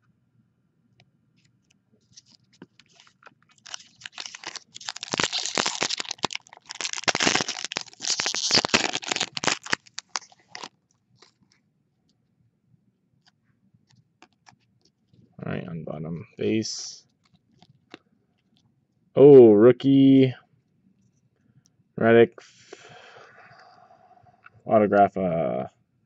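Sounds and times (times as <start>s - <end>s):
foil pack crinkling and tearing: 2.2s - 11.4s.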